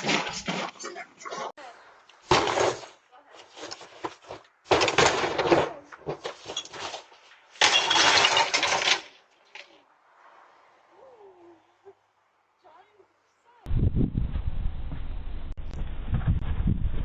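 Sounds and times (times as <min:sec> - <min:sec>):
something smashing and breaking: 0:07.6 - 0:09.2.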